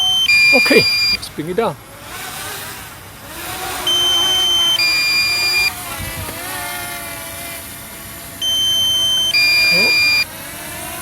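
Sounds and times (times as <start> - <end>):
two-tone electronic warning alarm: 0.0 - 1.3, 3.8 - 5.8, 8.4 - 10.3
drone propellers whining: 0.0 - 11.0.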